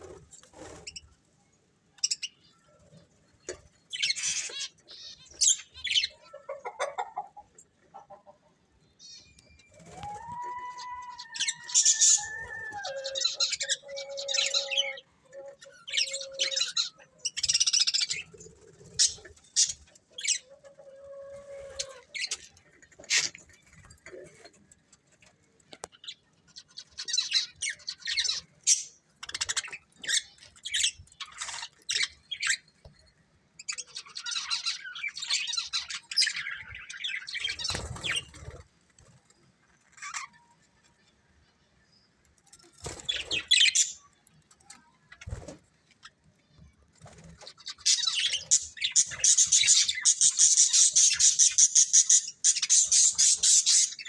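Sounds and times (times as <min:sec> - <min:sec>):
budgerigars chirping and chattering: 0:02.0 - 0:07.3, 0:11.4 - 0:20.6, 0:25.9 - 0:32.7, 0:33.6 - 0:38.6, 0:42.8 - 0:44.1, 0:45.2 - 0:54.0.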